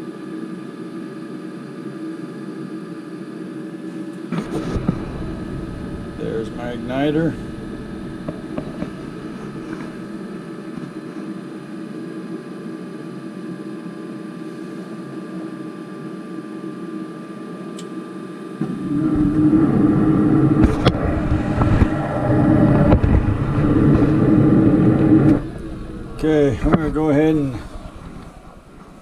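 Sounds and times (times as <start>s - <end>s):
inducer motor humming: 3.6s - 12.8s, 18.4s - 29.0s
burner flame rush and rumble: 4.3s - 10.8s, 18.6s - 29.0s.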